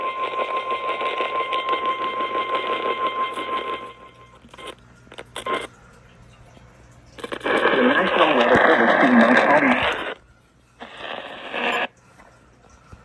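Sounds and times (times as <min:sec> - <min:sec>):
radio static hiss: 0:00.0 - 0:05.7, 0:07.2 - 0:10.2, 0:10.8 - 0:11.9
faint crackles: 0:00.0 - 0:13.0.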